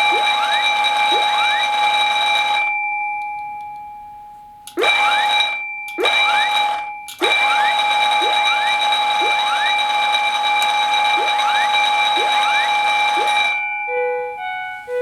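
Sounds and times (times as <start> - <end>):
fire alarm bell ringing: 0.0 - 15.0.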